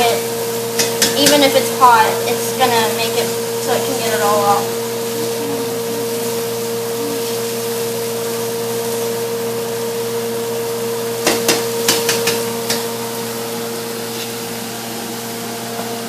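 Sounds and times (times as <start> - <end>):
steady motor hum: 0.0 - 16.0
kitchen utensils knocking: 11.2 - 12.8.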